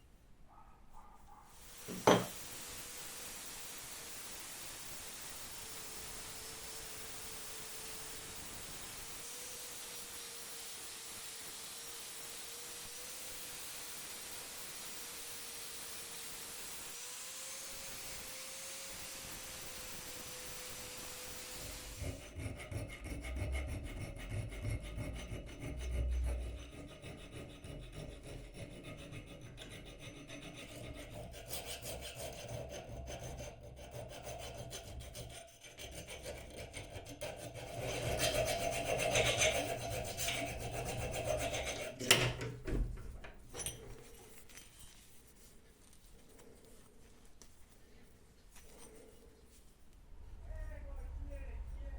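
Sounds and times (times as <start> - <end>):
steady hiss: 1.5 - 22.2
hand tool scraping wood: 1.8 - 2.4, 21.4 - 42.5, 43.5 - 47.0.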